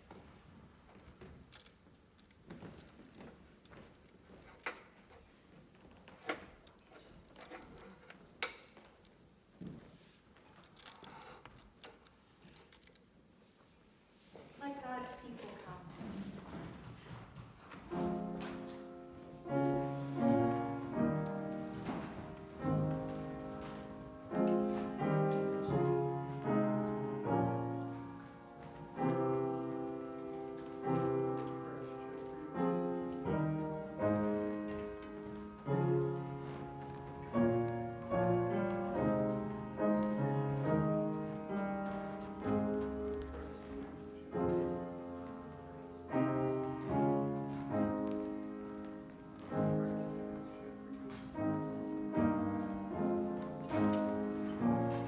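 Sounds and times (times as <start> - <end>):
slow piano chords: 17.8 - 55.0.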